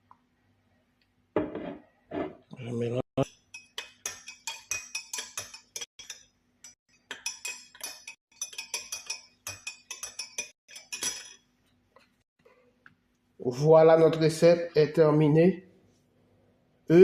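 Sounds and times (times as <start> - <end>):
spoon clinking in a glass: 3.2 - 11.5.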